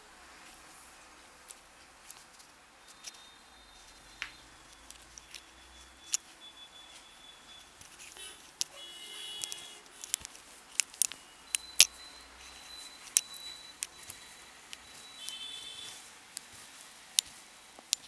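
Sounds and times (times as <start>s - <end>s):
hands rubbing hair and scalp: 12.3s - 18.0s.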